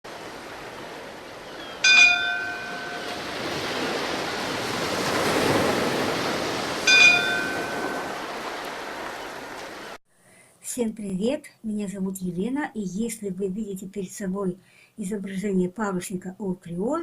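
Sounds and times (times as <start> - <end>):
sea waves: 0.0 - 10.0
bell ringing: 1.8 - 3.2, 6.9 - 8.2.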